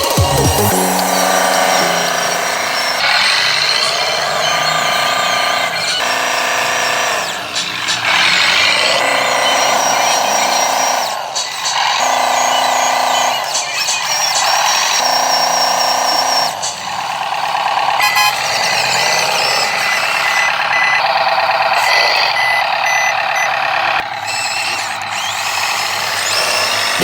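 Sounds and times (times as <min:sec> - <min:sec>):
truck engine: 0:00.0 - 0:27.0
reversing beeps: 0:18.0 - 0:23.7.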